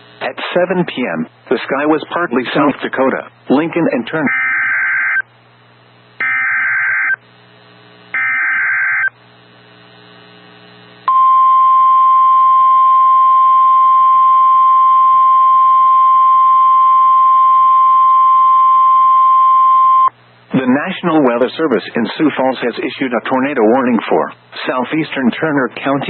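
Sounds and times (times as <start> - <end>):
steady loud alarm tone: 4.2 - 5.2, 6.2 - 7.2, 8.1 - 9.1.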